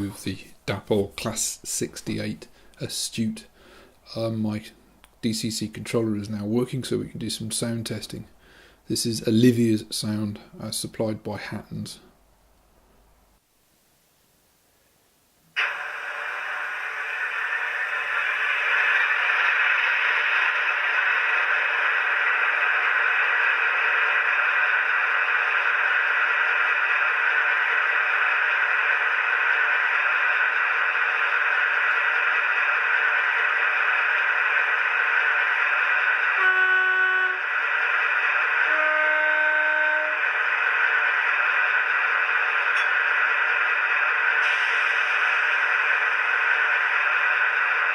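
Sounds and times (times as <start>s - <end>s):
locomotive horn: 36.3s - 37.6s, 38.6s - 40.4s.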